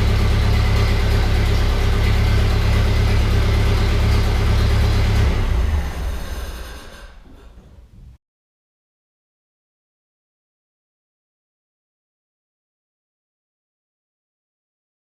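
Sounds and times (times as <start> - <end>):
car engine running: 0.0 - 7.2.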